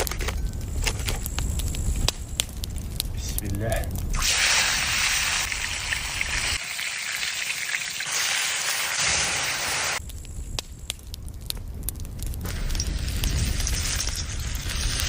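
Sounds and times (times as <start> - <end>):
oil popping and crackling: 0.0 - 15.0
fish sizzling in hot oil: 4.1 - 10.1.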